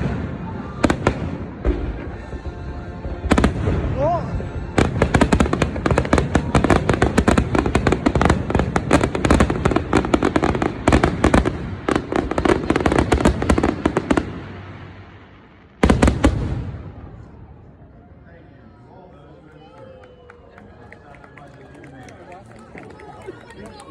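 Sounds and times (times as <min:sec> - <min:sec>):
fireworks bangs: 0:00.0 - 0:17.6.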